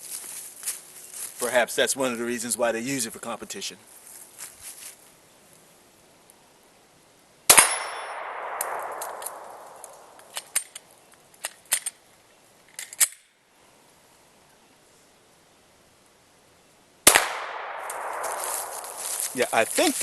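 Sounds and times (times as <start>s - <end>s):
pistol shot: 7.5s - 10.2s, 17.0s - 18.9s.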